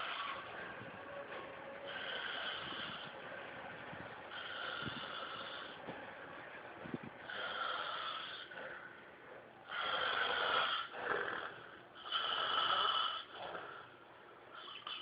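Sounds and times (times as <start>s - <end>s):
person snoring: 1.9s - 3.2s, 4.3s - 5.8s.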